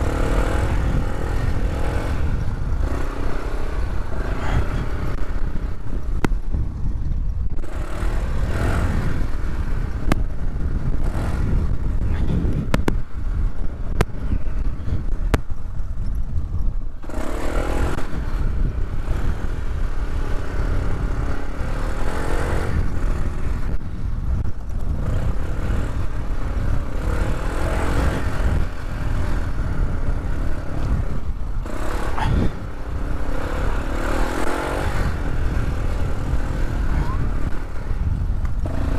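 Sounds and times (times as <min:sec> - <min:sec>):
off-road vehicle engine revving: 0:00.0 - 0:06.8, 0:07.5 - 0:15.7, 0:16.4 - 0:38.9
sharp clicks: 0:12.7 - 0:13.0.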